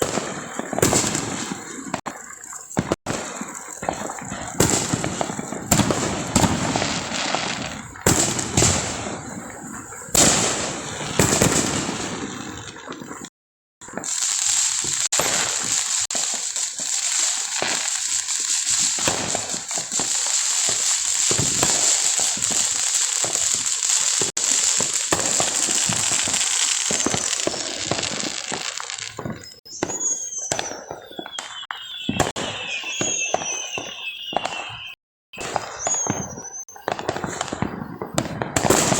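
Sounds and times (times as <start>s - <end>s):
fireworks bangs: 0.0s - 38.9s
fireworks crackling: 0.0s - 38.9s
fireworks pops: 0.0s - 38.9s
wavering whistle: 29.3s - 36.9s.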